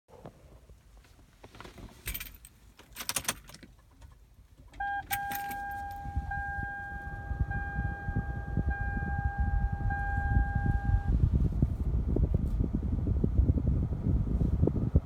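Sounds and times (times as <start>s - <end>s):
car keys jangling: 2.0s - 6.3s
steady electronic tone: 4.9s - 11.2s
low rumble: 5.9s - 15.0s.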